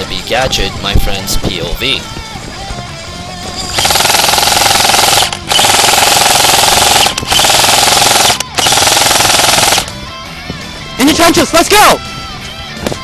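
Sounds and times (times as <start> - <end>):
airsoft guns firing full auto: 3.7 - 9.9.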